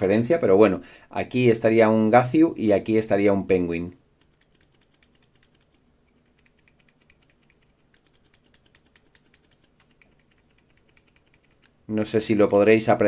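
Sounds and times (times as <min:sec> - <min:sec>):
rapid keyboard typing: 0:04.2 - 0:11.8.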